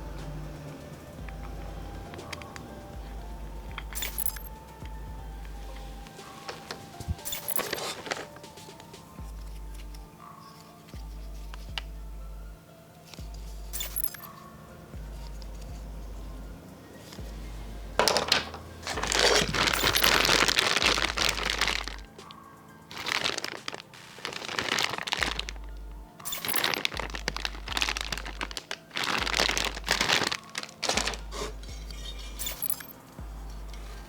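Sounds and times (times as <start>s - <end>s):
background music with bass line: 0.0s - 34.0s
small parts clattering: 1.3s - 12.0s, 13.0s - 14.5s, 16.9s - 34.0s
plastic crinkling: 5.4s - 12.0s, 18.0s - 33.0s.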